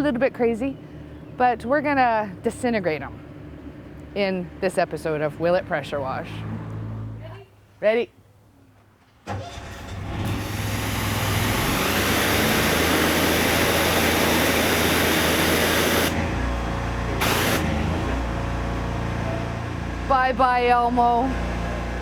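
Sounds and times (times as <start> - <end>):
pressure washer engine running: 10.2 - 20.2
high-pressure spray hissing: 10.4 - 16.2, 17.2 - 17.8.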